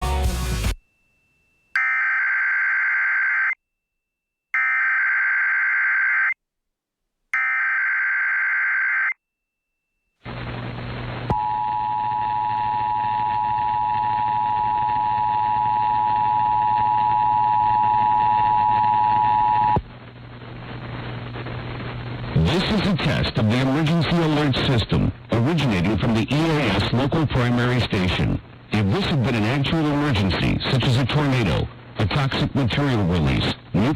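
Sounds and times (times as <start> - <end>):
broadcast hiss and hum: 10.2 - 33.9.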